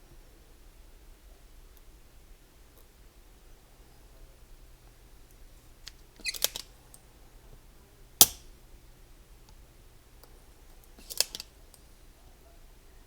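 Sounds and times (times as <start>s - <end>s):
hand tools clicking: 8.2s - 8.4s.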